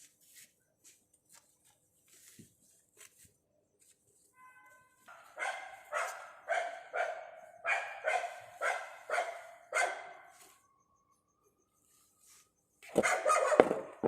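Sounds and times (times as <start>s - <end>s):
dog barking: 5.1s - 10.3s, 12.9s - 13.9s.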